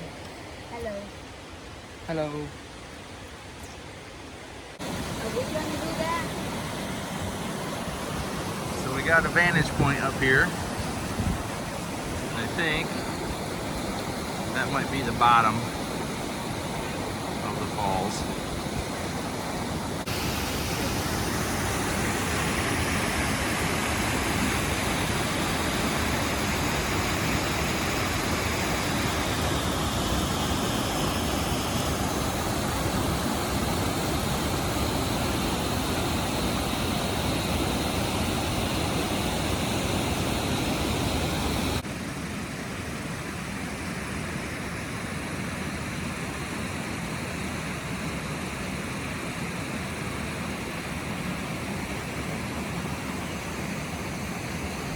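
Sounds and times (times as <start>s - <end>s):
waterfall rushing: 4.8s - 41.9s.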